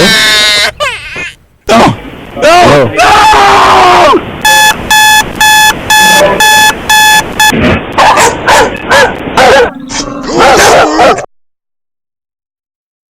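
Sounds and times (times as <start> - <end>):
digital alarm clock beeping: 4.4 - 7.6.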